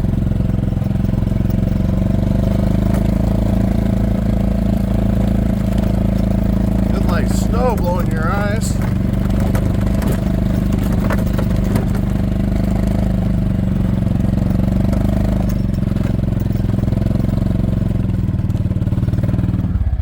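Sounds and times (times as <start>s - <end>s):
golf cart engine running: 0.0s - 20.0s.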